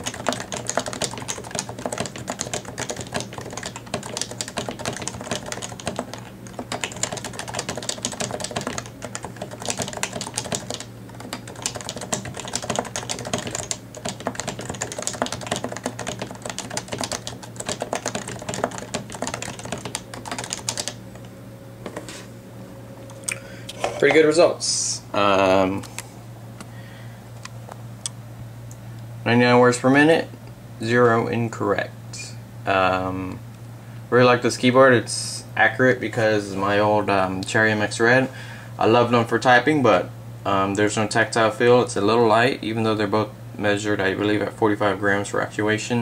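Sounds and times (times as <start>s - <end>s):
fast keyboard typing: 0.0s - 21.0s.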